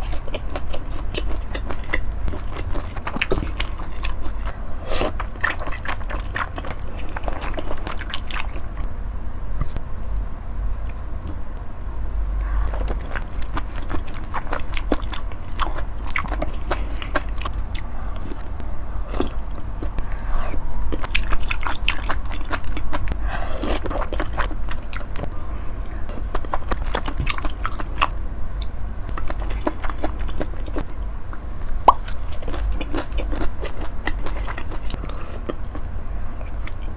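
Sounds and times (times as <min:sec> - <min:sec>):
wet chewing mouth clicks: 0:00.0 - 0:08.9
low rumble: 0:00.0 - 0:36.9.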